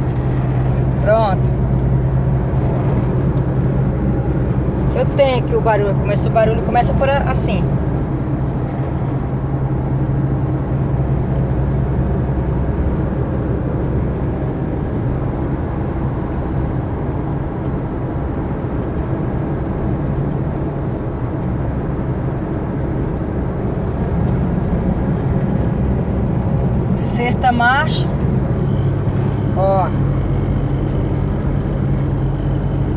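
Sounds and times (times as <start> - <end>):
pickup truck in-cab drone: 0.0 - 32.9
road noise: 0.0 - 32.9
strong low hum: 23.1 - 32.9.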